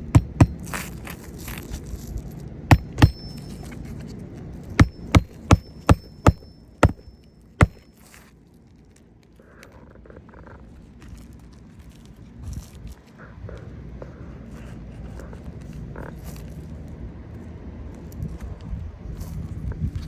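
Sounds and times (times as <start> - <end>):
hammer striking nails: 0.0 - 0.7, 2.7 - 3.7, 4.8 - 7.9.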